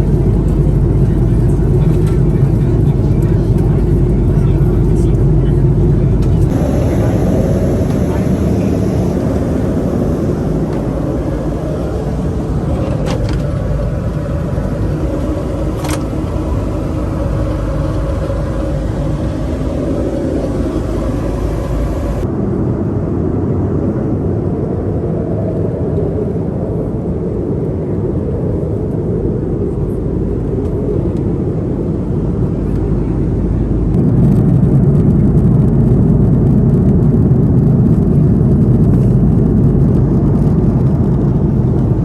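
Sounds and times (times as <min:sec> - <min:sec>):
low rumble: 0:00.0 - 0:22.4
airliner cabin roar in flight: 0:00.0 - 0:42.0.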